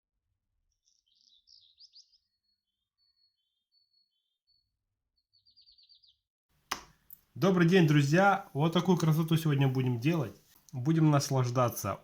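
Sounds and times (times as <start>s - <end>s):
faint birdsong: 0.6s - 6.3s.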